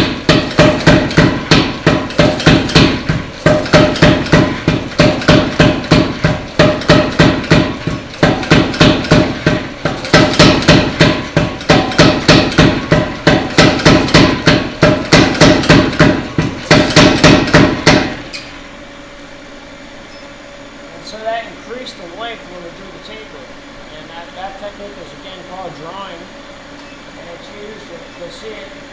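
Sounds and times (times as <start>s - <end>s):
hammer blows on hot steel: 0.0s - 18.4s
ringing anvil tone: 0.0s - 18.5s.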